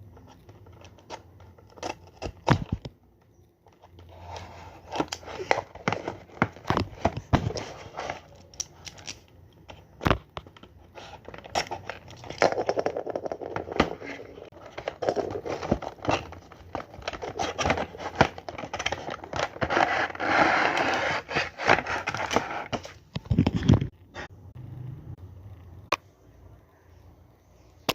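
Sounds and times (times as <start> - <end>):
plastic and paper crinkling: 10.5 - 23.9.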